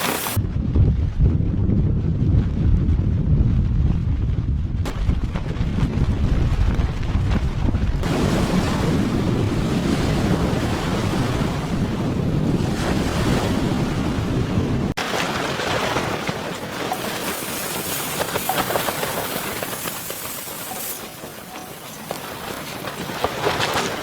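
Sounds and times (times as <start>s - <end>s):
strong wind buffeting microphone: 0.0s - 15.0s.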